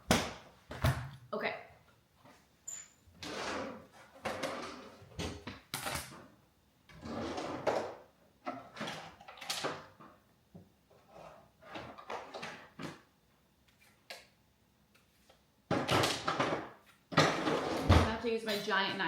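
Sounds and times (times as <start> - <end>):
drawer opening and closing: 3.1 - 10.2, 10.9 - 13.1, 15.7 - 18.6
kitchen utensils knocking and sliding: 15.7 - 19.0.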